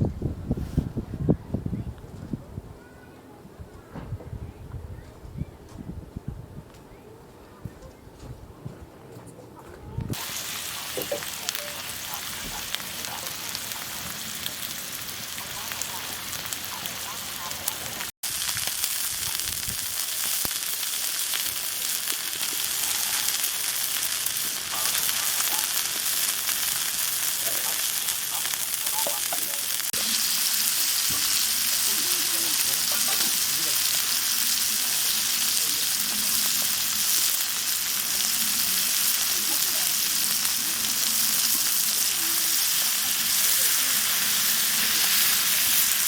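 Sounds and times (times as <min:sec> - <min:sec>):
food sizzling in oil: 0:10.1 - 0:46.0.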